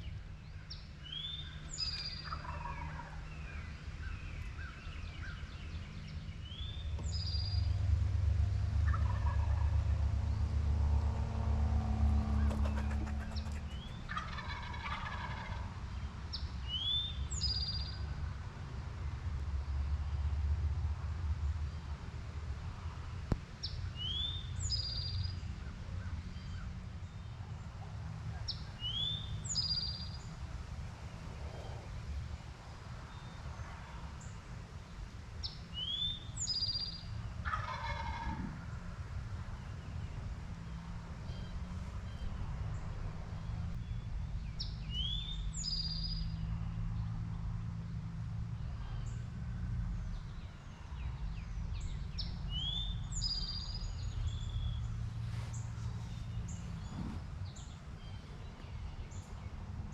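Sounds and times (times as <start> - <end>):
turkey gobbling: 2.2 - 3.2, 8.9 - 9.7, 12.2 - 15.7, 37.4 - 38.7
steady low rumble: 6.1 - 15.8.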